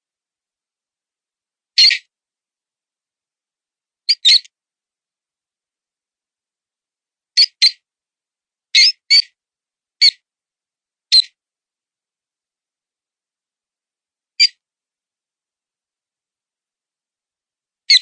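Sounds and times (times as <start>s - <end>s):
mouse distress squeaks: 1.8s - 2.1s, 4.1s - 4.5s, 8.8s - 9.3s.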